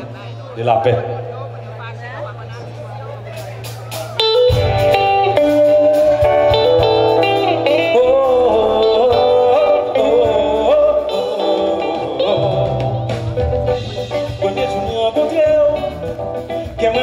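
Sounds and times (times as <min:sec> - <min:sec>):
live band playing: 0:00.0 - 0:17.0
lead guitar with bent notes: 0:00.3 - 0:17.0.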